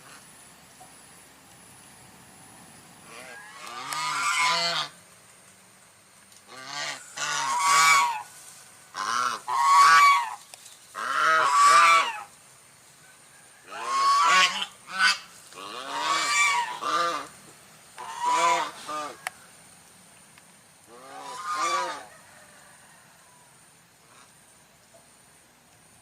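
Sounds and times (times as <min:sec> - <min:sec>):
goose honking: 0:03.0 - 0:05.0, 0:06.5 - 0:08.3, 0:09.0 - 0:10.4, 0:11.0 - 0:12.3, 0:13.7 - 0:17.4, 0:18.0 - 0:19.2, 0:20.9 - 0:22.1.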